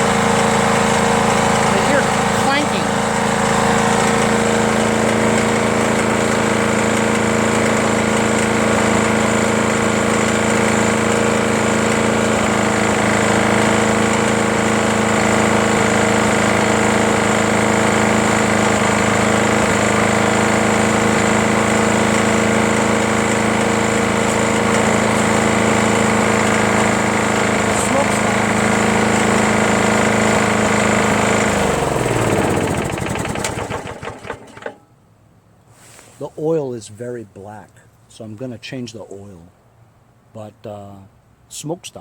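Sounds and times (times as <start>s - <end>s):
lawn mower engine running: 0.0s - 34.9s
clanking rattle: 32.4s - 34.8s.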